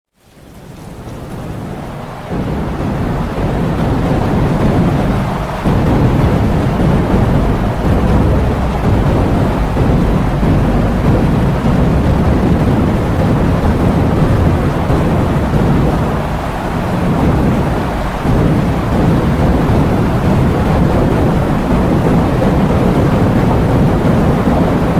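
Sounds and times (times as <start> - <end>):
heavy rain hissing: 0.2 - 24.9
strong wind gusts: 0.6 - 24.9.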